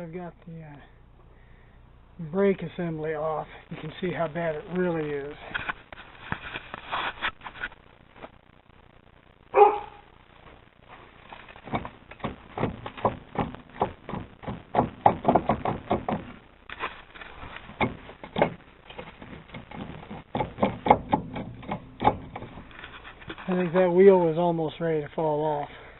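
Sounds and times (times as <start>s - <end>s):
dog barking: 9.5s - 10.1s
quick clicks and knocks: 11.4s - 17.0s.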